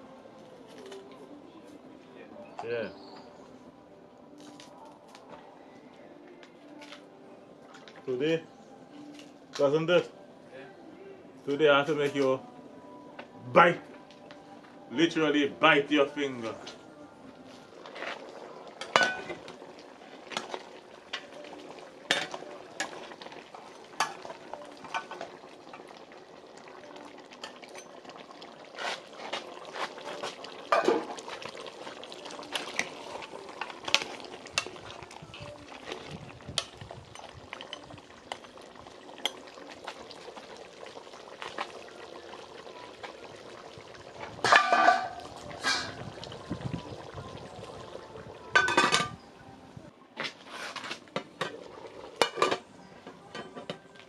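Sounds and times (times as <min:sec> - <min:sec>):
steady cooking noise: 0:11.5 - 0:54.0.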